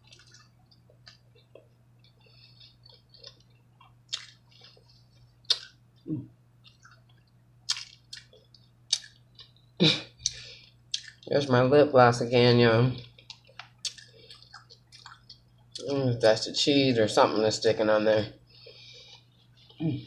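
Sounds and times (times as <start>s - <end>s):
chewing with wet mouth smacking: 0.0s - 5.8s, 6.6s - 9.6s, 10.2s - 11.3s, 13.0s - 16.0s.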